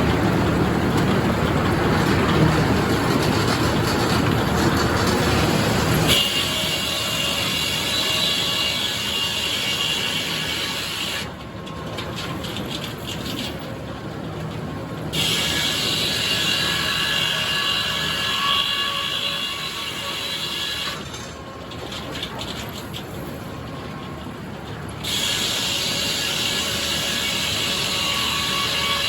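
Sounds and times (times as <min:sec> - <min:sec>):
mill clattering clicks: 0:00.0 - 0:06.1, 0:11.3 - 0:15.1, 0:21.0 - 0:25.0
circular saw cutting wood: 0:03.1 - 0:11.3, 0:15.1 - 0:21.4, 0:25.0 - 0:29.0.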